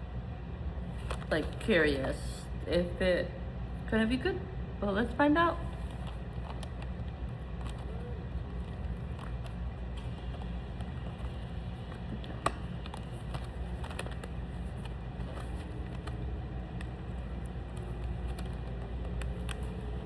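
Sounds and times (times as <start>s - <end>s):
steady low hum: 0.0s - 20.0s
clicks and taps of objects handled: 5.7s - 20.0s.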